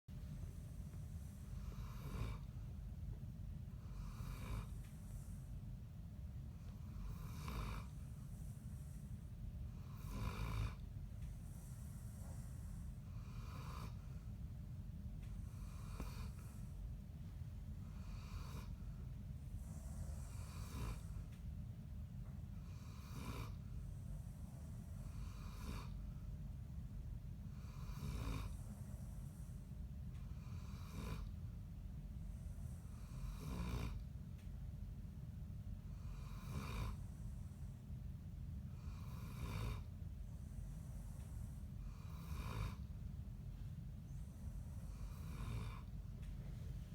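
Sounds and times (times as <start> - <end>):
steady low hum: 0.1 - 46.9
dog snoring: 0.2 - 5.6, 6.3 - 14.4, 15.2 - 17.0, 17.7 - 21.6, 22.2 - 26.3, 27.4 - 34.2, 35.8 - 37.9, 38.6 - 43.2, 43.9 - 46.4.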